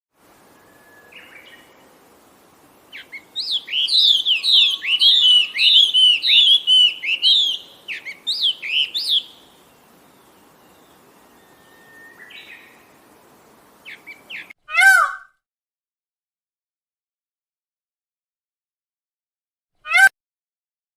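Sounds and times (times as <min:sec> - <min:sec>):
songbird sliding chirps: 0:02.9 - 0:09.5.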